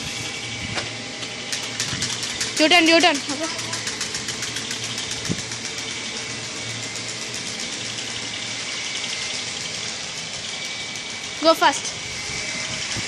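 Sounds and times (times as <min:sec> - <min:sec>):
card flapping in bicycle spokes: 0:00.8 - 0:09.1.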